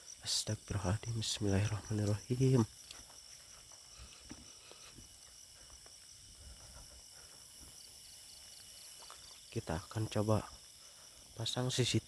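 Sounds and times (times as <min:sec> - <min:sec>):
crickets and insects trilling: 0:00.0 - 0:12.0
fast pulsing insect chirp: 0:00.0 - 0:12.0
soft footsteps through grass: 0:01.4 - 0:09.5.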